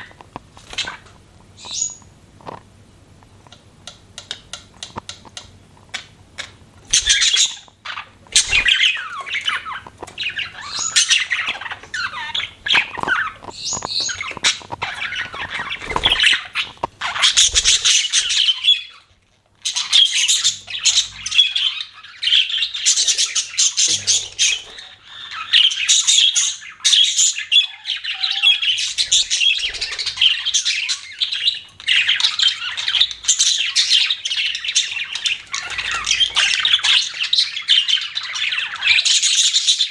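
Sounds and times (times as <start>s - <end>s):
budgerigars chattering and chirping: 3.9s - 39.9s.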